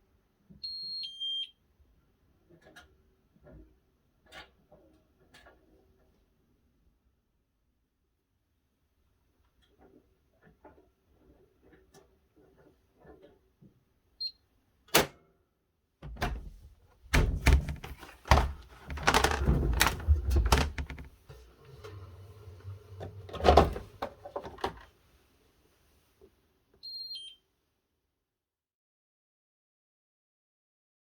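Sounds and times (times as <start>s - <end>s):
clicks knocks and thumps: 16.0s - 21.2s.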